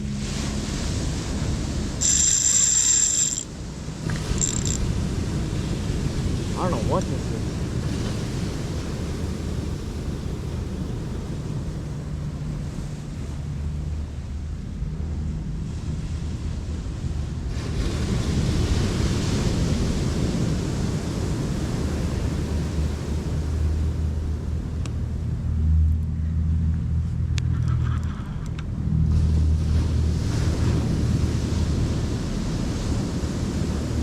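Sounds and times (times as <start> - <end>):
ocean surf: 0.0 - 25.9, 27.4 - 34.0
wind buffeting microphone: 3.5 - 25.6.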